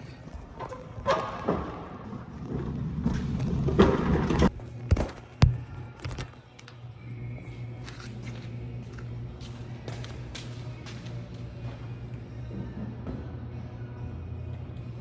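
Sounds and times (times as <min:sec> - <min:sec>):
knocks and thumps: 0:04.5 - 0:06.4.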